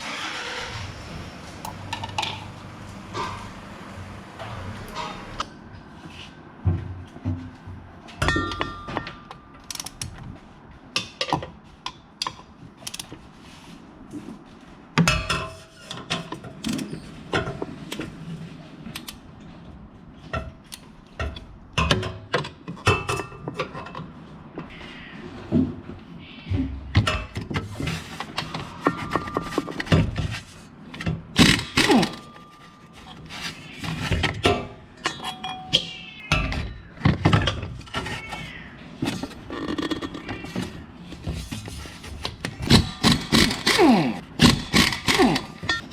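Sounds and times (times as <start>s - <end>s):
hand tools and metal parts clanking: 7.1s - 13.2s, 27.0s - 38.4s, 39.0s - 45.9s.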